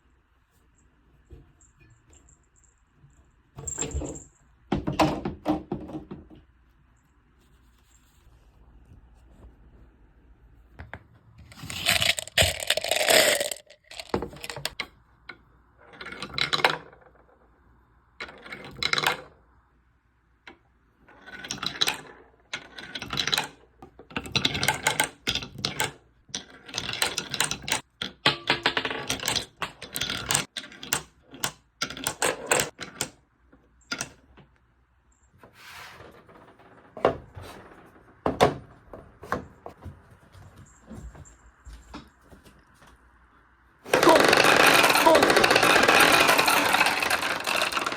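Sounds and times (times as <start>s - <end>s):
marbles rolling and clattering: 11.4s - 14.8s, 15.9s - 17.3s, 21.1s - 23.6s, 24.2s - 33.2s, 43.9s - 47.9s.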